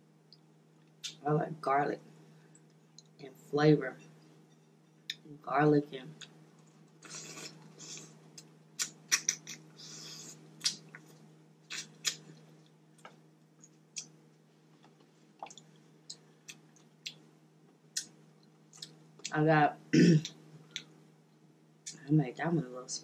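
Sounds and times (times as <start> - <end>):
wet lip smacks and clicks: 8.4 - 9.6.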